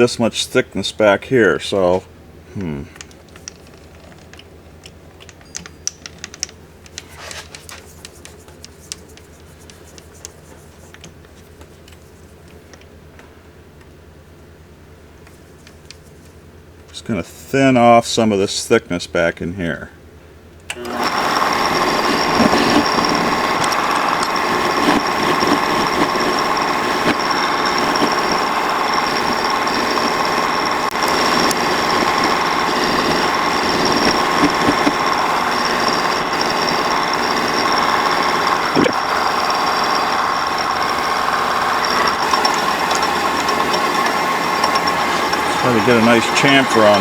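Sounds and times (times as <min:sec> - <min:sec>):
metal lathe cutting: 0:20.7 - 0:47.0.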